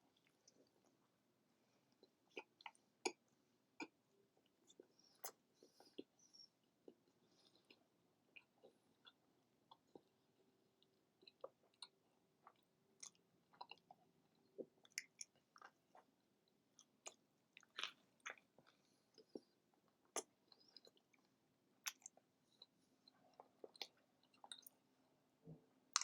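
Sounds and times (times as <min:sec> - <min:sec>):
faint chewing mouth smacks: 0:01.9 - 0:04.0, 0:04.7 - 0:06.1, 0:10.8 - 0:16.1, 0:16.8 - 0:24.8.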